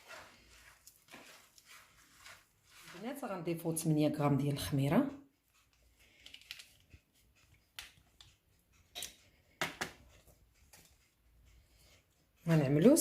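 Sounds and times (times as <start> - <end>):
kitchen clicks and taps: 8.9 - 10.1.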